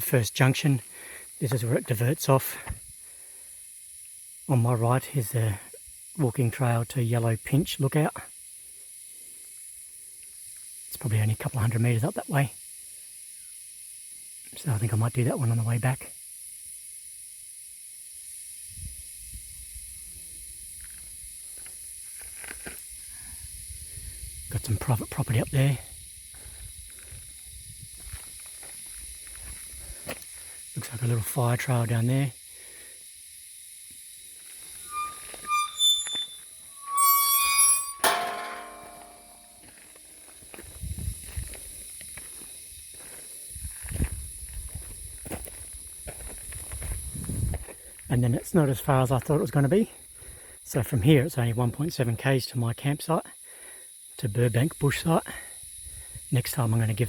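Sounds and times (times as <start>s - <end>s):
insects droning: 0.0s - 57.0s
wind rumble on microphone: 23.2s - 24.7s, 25.9s - 28.4s, 40.6s - 41.7s, 43.5s - 47.8s
footsteps on a trail: 26.3s - 30.6s, 40.3s - 47.9s.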